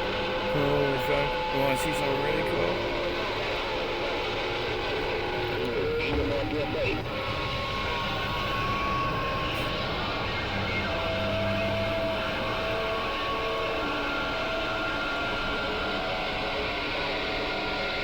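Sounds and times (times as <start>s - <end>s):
radio static hiss: 0.0s - 4.3s
faint whistling tones: 0.0s - 18.0s.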